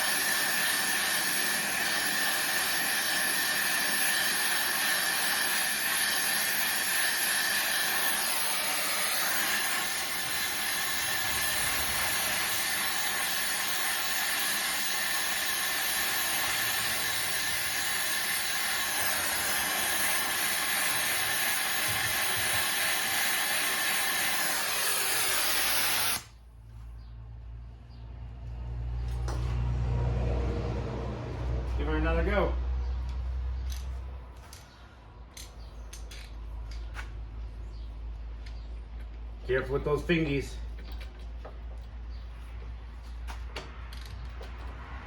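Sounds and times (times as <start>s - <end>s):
gas torch flame hissing: 0.0s - 26.4s.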